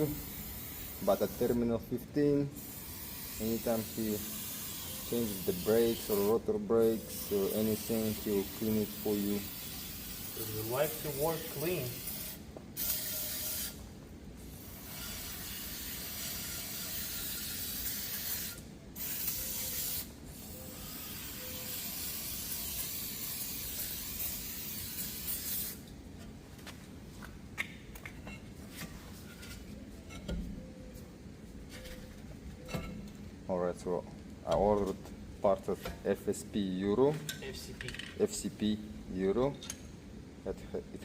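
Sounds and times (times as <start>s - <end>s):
aerosol spray hissing: 2.6s - 6.4s, 7.0s - 13.8s, 20.8s - 25.8s.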